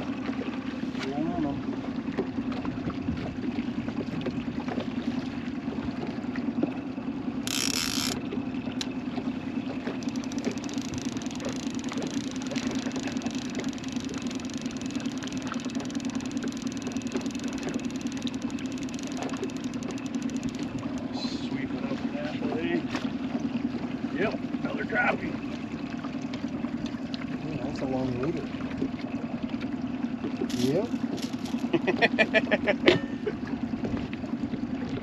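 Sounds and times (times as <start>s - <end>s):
boat motor humming: 0.0s - 35.0s.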